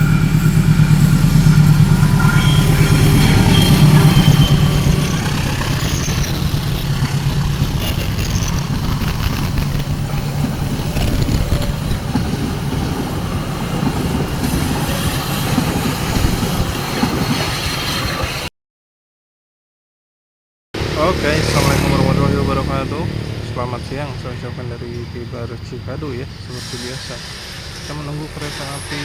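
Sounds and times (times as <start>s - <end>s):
heavy train engine: 0.0s - 18.5s, 20.8s - 29.0s
train cars clattering on rails: 0.0s - 18.5s, 26.5s - 29.0s.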